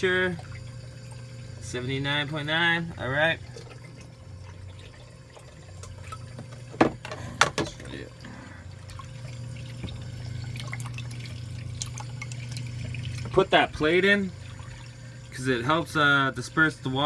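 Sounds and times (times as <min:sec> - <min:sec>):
water trickling and splashing: 0:00.0 - 0:01.6, 0:03.3 - 0:06.7, 0:07.7 - 0:15.6
steady low hum: 0:00.0 - 0:17.0.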